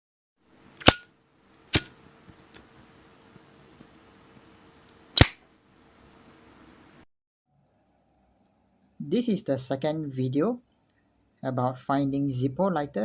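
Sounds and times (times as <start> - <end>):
lighter lid clicking: 5.2 - 5.4.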